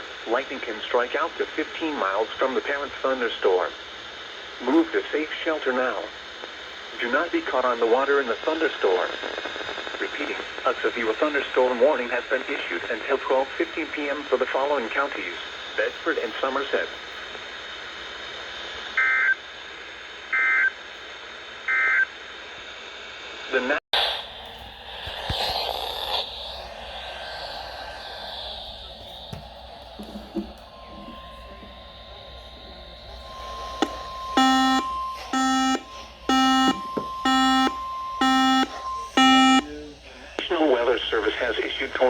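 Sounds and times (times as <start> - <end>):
radio hiss: 0.0 - 42.0
steady warning tone: 24.0 - 42.0
warbling digital data bursts: 24.1 - 42.0
short buzzy alarm beeps: 29.4 - 39.9.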